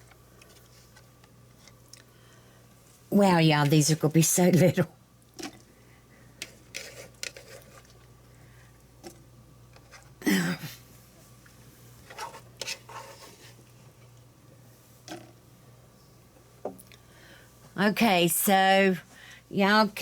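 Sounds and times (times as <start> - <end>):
faint steady low hum: 0.0 - 20.0.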